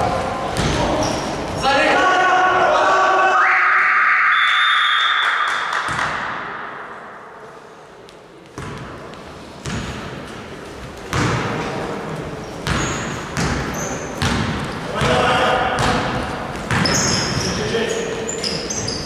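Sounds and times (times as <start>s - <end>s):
basketball bouncing on gym floor: 0.5s - 1.6s, 5.9s - 6.4s, 8.5s - 10.2s, 11.1s - 11.6s, 12.6s - 17.6s.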